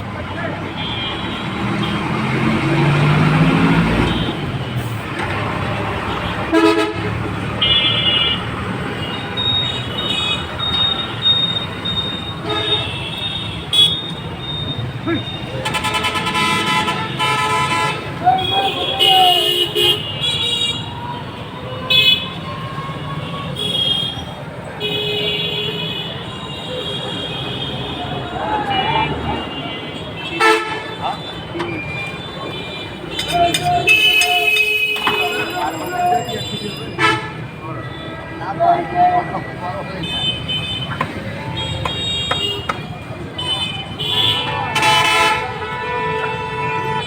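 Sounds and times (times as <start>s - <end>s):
busy outdoor market din: 0.0s - 47.0s
street noise: 0.0s - 47.0s
vehicle engine passing: 1.6s - 4.2s.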